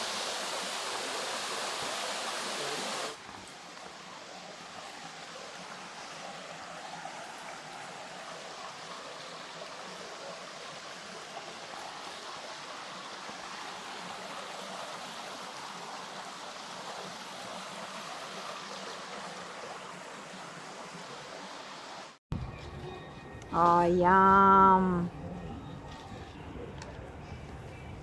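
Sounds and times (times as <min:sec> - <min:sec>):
river water rushing: 0:00.0 - 0:22.2.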